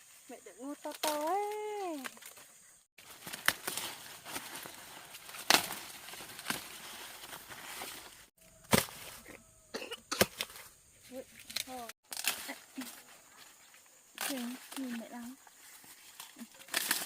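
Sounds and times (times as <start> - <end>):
corn plants rustling: 0.0 - 9.4, 10.2 - 17.0
corn ears snapping off: 0.9 - 2.4, 3.0 - 7.4, 8.6 - 9.2, 10.2 - 10.7, 11.3 - 12.9, 14.2 - 15.1, 16.1 - 17.0.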